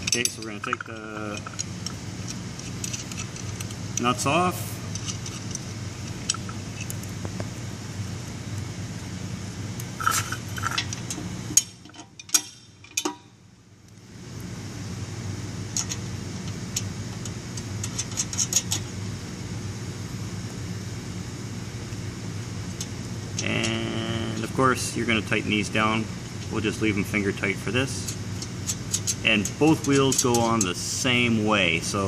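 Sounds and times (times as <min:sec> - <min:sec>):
small metal parts clinking: 0:00.0 - 0:04.1, 0:04.9 - 0:07.0, 0:28.0 - 0:30.8.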